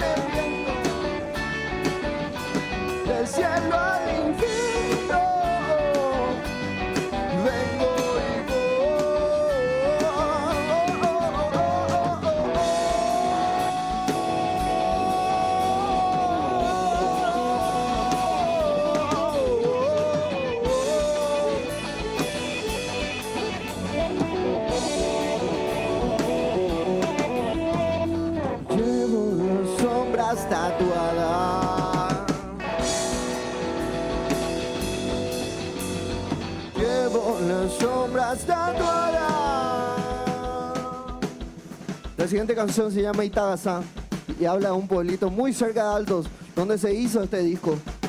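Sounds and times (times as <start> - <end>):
held melodic line: 0.0 - 41.6
live rock band playing: 0.0 - 48.0.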